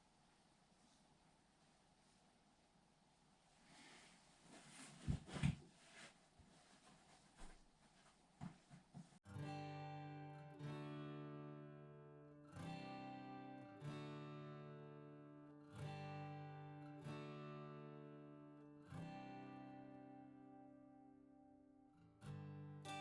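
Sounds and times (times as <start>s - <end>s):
acoustic guitar chords strummed: 9.3s - 23.0s.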